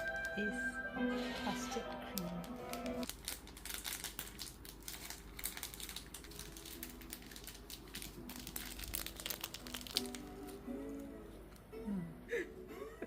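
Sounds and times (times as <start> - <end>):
plastic wrapper crinkling: 2.1 - 11.1.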